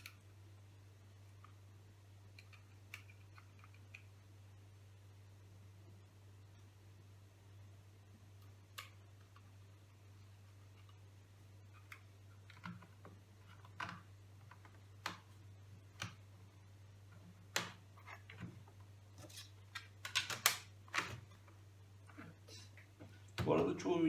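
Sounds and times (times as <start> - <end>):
faint low hum: 0.0 - 24.0
small parts clicking and tapping: 2.3 - 4.2, 11.7 - 16.3, 17.1 - 22.3.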